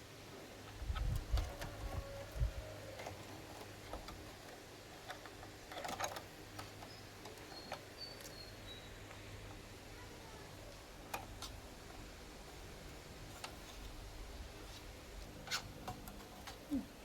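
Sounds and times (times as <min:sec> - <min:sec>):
small clicks and handling noises: 0:00.7 - 0:08.4, 0:10.7 - 0:12.6, 0:13.2 - 0:16.9.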